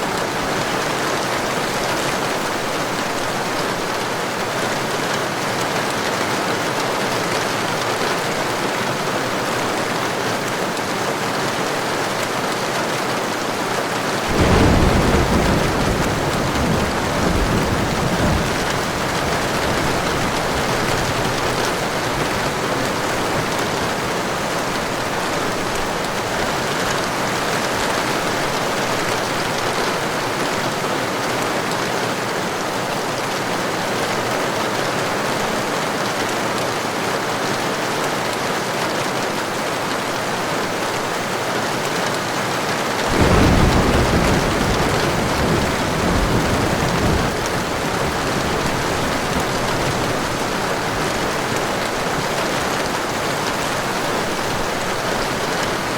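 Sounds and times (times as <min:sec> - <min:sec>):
heavy rain falling: 0:00.0 - 0:55.9
thunder rumbling: 0:14.3 - 0:25.9, 0:43.1 - 0:55.5.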